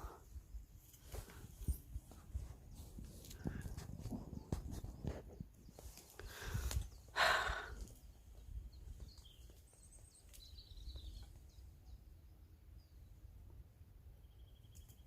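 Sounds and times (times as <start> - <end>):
wind rumble on microphone: 0.0 - 9.9
faint bird chirps: 5.6 - 13.2, 14.1 - 15.0.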